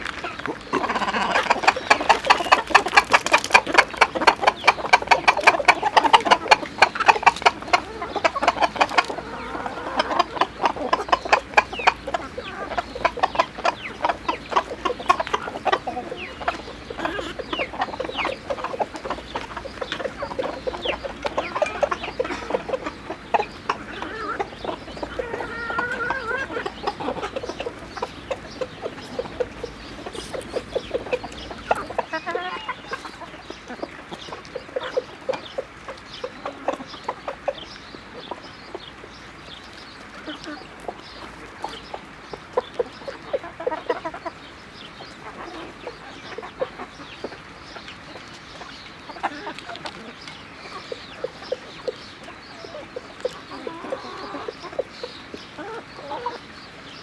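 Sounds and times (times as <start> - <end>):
chickens clucking: 0.0 - 57.0.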